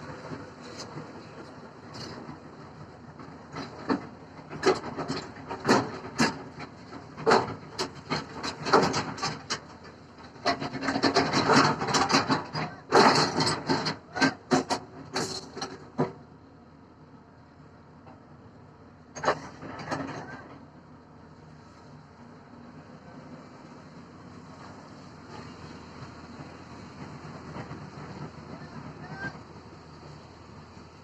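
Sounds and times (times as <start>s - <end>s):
excavator bucket scraping stones: 0.6s - 2.3s.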